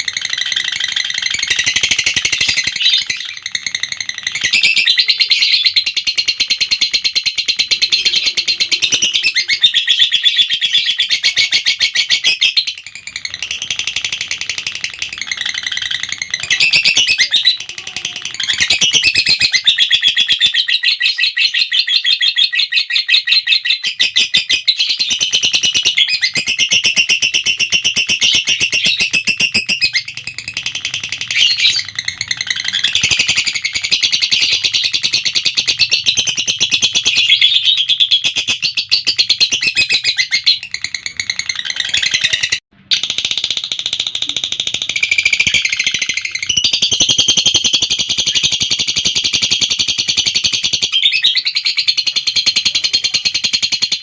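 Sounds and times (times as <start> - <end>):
bird chattering trills: 0.0 - 22.7.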